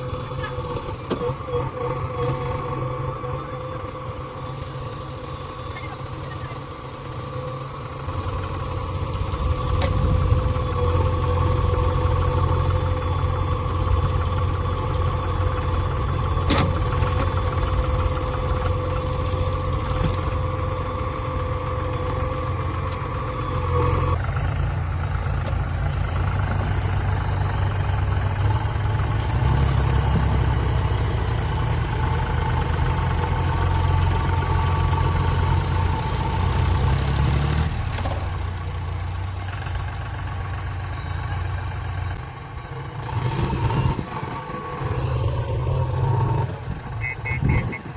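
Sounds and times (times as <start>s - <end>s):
steady whine: 0.0s - 24.2s
diesel machinery engine running: 0.0s - 47.9s.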